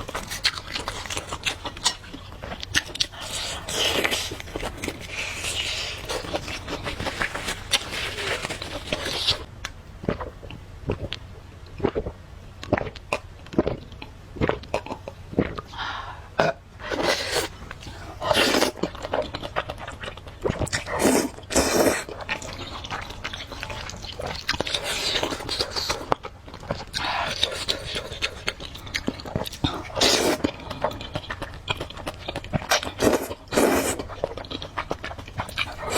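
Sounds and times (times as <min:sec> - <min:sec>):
chewing with wet clicks: 0:00.0 - 0:07.5, 0:09.6 - 0:15.7, 0:17.6 - 0:35.9
noodle slurping: 0:20.6 - 0:26.2, 0:29.6 - 0:30.5, 0:32.8 - 0:34.1.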